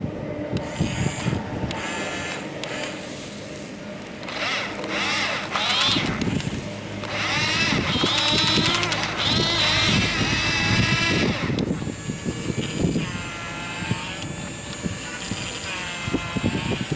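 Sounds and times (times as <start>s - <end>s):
electric motors whining: 0.0s - 16.9s
gears clicking and ratcheting: 4.0s - 16.9s.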